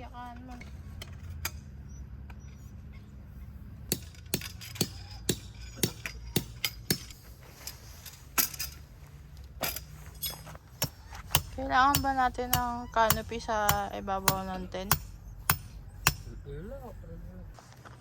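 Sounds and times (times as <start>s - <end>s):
sharp metallic knocks and clinks: 3.9s - 8.8s, 9.6s - 16.4s.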